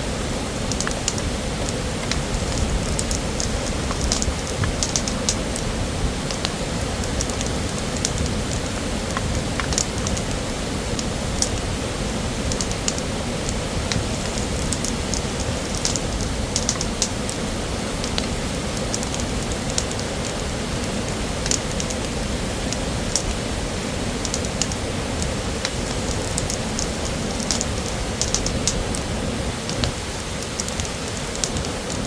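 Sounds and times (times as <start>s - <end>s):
waterfall rushing: 0.0s - 32.0s
sharp light ticks: 0.7s - 5.7s, 6.3s - 11.7s, 12.4s - 17.4s, 18.0s - 23.3s, 24.2s - 29.1s, 29.7s - 32.0s.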